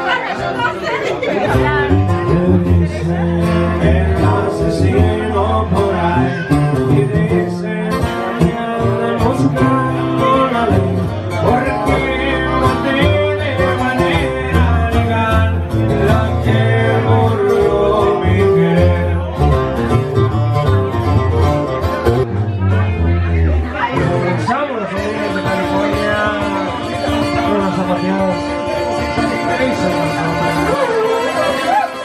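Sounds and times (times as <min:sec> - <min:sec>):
upbeat music with plucked strings: 0:01.2 - 0:32.0
person singing: 0:01.6 - 0:19.5.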